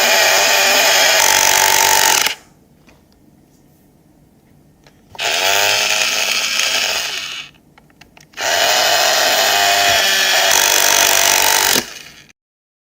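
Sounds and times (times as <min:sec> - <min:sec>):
power drill whining: 0:00.0 - 0:02.4, 0:05.2 - 0:07.6, 0:08.4 - 0:12.3.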